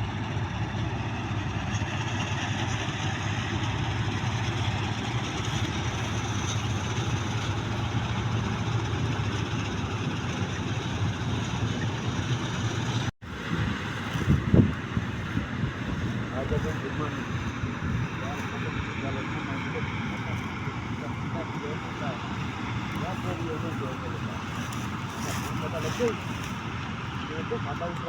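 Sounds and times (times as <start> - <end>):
combine harvester engine humming: 0.0 - 28.0.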